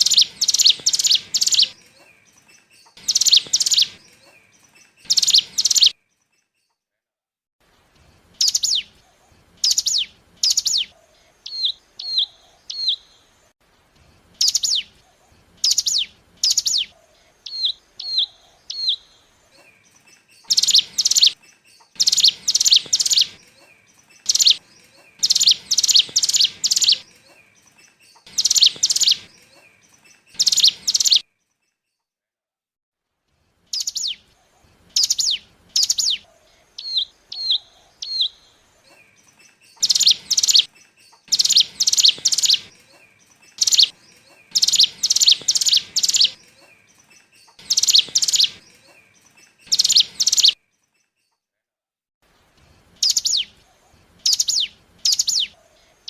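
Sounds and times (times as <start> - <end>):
bird calling sharp chips: 0.0 - 6.4, 19.6 - 31.2, 38.9 - 51.2.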